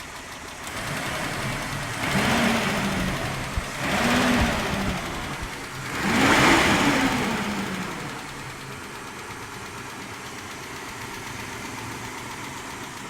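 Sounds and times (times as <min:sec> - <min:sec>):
car engine revving: 0:00.6 - 0:09.0.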